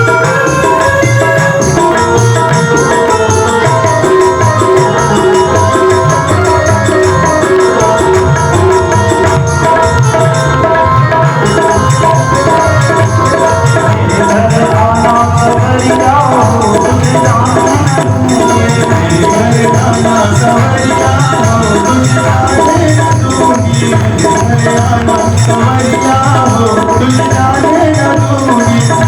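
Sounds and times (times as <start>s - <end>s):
hand drums: 0.0s - 29.0s
sustained keyboard chords: 0.0s - 29.0s.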